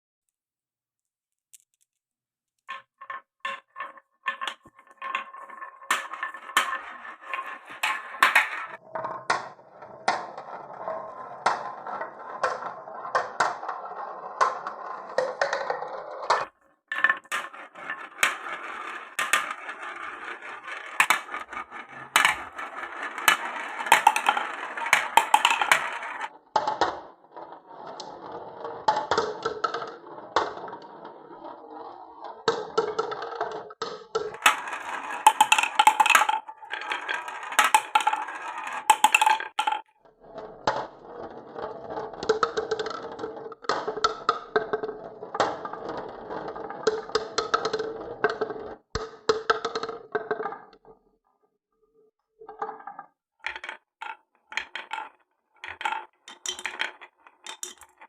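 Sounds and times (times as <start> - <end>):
marbles clicking and knocking: 2.6 - 50.8, 52.4 - 58.0
marbles rolling on wooden track: 2.6 - 51.0, 52.4 - 58.0.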